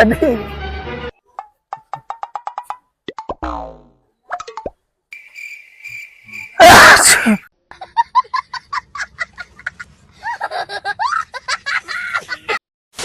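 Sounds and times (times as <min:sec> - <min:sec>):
loud sneeze: 0:06.6 - 0:07.5.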